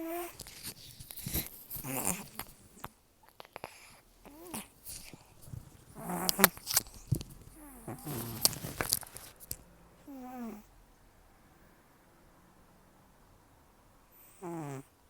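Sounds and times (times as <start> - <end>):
cat snoring: 0.0 - 0.6, 1.2 - 2.8, 3.6 - 9.3, 10.0 - 10.7, 14.1 - 15.0.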